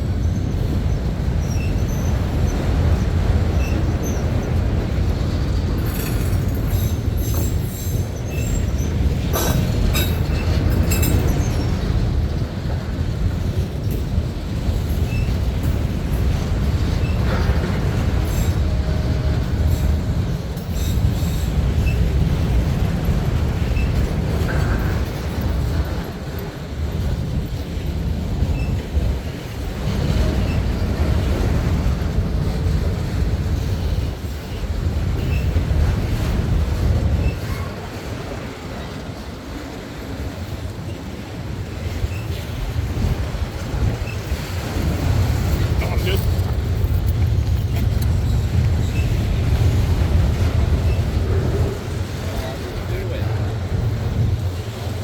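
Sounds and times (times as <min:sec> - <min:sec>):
freight train rumbling past: 0:00.0 - 0:55.0
wheel squeals: 0:00.2 - 0:04.6, 0:05.5 - 0:12.4, 0:14.8 - 0:15.9, 0:16.6 - 0:22.3, 0:23.6 - 0:26.5, 0:28.4 - 0:28.8, 0:35.2 - 0:35.8, 0:36.8 - 0:39.0, 0:41.8 - 0:54.8.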